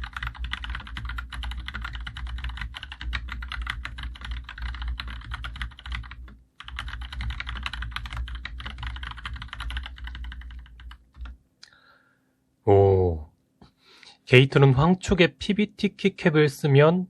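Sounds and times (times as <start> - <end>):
fast typing on mechanical keyboard: 0.0 - 11.4.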